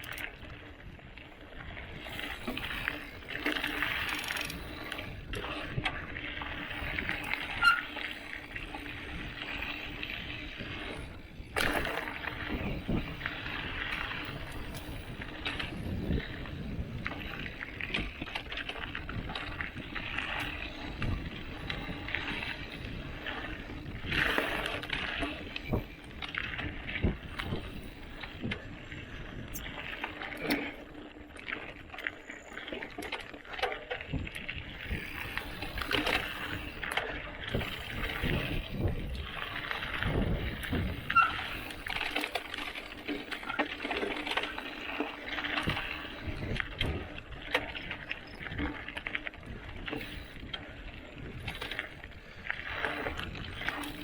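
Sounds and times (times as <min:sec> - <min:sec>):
bike tyres rolling on dirt: 0:00.0 - 0:54.0.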